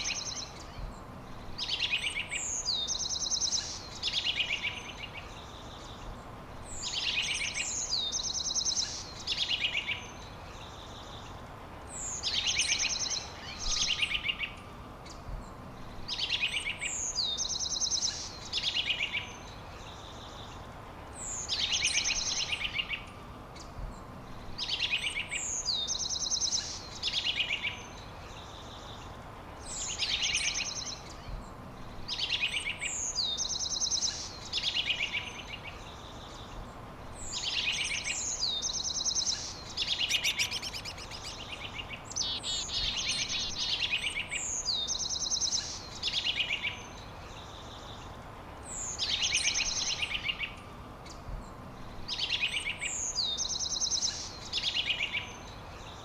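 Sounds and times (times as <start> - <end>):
faint background hiss: 0.0 - 56.0
songbird trilling: 29.7 - 56.0.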